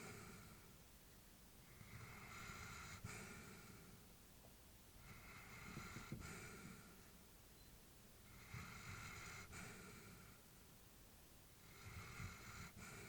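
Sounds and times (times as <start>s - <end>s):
dog breathing in sleep: 0.0s - 0.7s, 1.7s - 4.0s, 5.0s - 7.1s, 8.2s - 10.4s, 11.6s - 13.0s.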